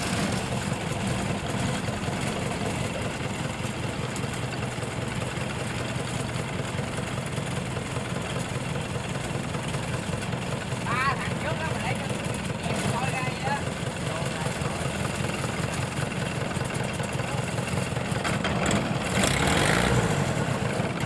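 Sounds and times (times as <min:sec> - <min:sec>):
engine idling with rattle: 0:00.0 - 0:21.0.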